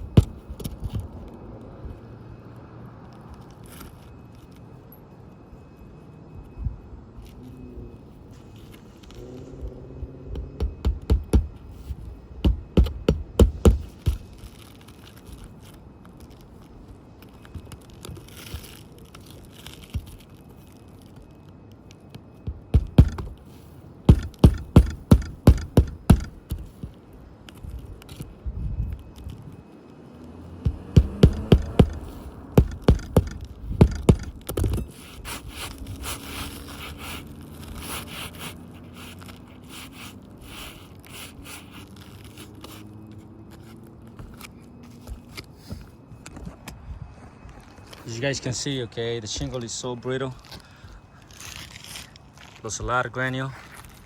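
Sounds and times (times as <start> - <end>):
rapid knocks on roof shingles: 0.0 - 0.5, 10.3 - 11.6, 12.4 - 14.4, 22.5 - 23.4, 24.1 - 26.9, 30.7 - 34.8.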